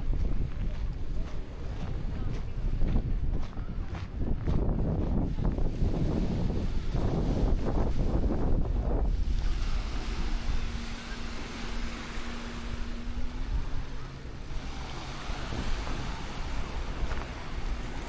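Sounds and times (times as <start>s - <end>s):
wind buffeting microphone: 0.0s - 18.0s
surf washing on shore: 5.2s - 18.0s.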